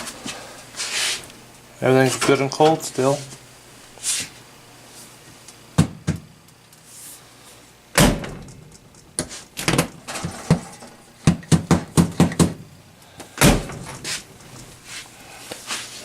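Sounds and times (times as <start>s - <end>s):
refrigerator door clunk: 8.0s - 8.6s, 13.4s - 14.0s.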